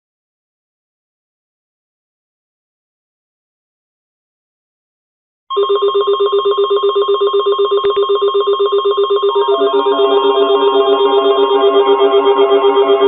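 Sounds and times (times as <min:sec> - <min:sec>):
lower repeating electronic tones: 0:06.8 - 0:13.0
electronic trilling tone: 0:07.9 - 0:13.0.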